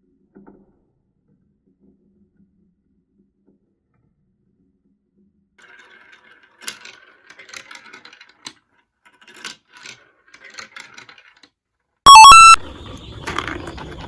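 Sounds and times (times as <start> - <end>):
marbles rolling and clicking: 5.6 - 11.5, 12.1 - 14.0
electronic jingle: 12.1 - 12.6.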